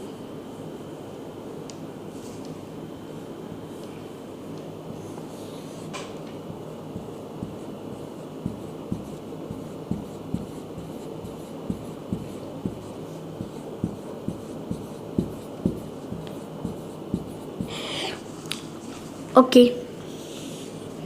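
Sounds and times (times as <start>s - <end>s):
faint steady hum: 0.0s - 21.0s
pen strokes and taps on paper: 6.0s - 17.7s.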